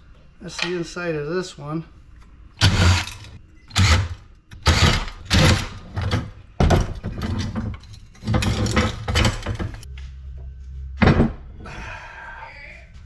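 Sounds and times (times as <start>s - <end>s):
metal parts rattling and scraping: 2.6s - 9.9s.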